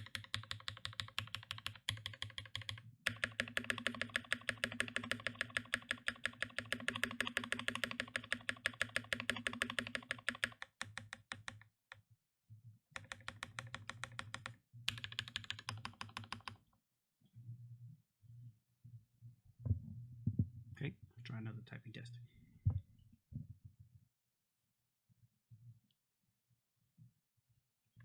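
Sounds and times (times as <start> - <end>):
fast typing on mechanical keyboard: 0.0 - 11.6, 13.0 - 16.6.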